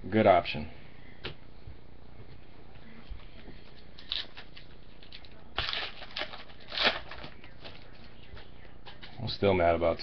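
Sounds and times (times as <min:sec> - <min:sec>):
foil wrappers and cards rustling: 0:04.0 - 0:08.5.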